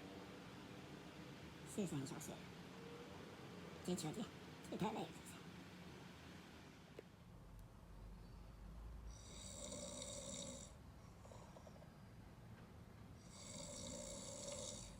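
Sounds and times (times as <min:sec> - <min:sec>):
dog snoring faintly: 0:09.1 - 0:12.0, 0:13.2 - 0:14.9.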